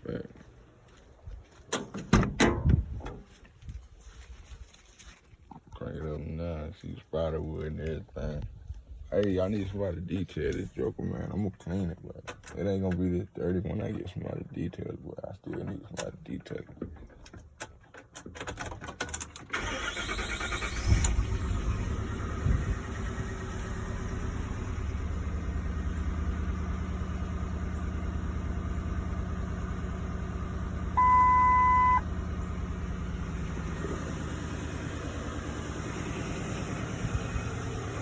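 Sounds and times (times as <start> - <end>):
truck engine starting and idling: 15.7 - 38.0
beep: 31.0 - 32.0.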